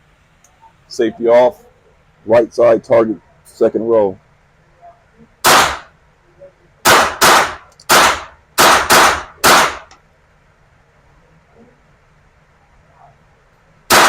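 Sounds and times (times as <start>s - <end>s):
rifle shots: 5.4s - 5.9s, 6.8s - 9.9s.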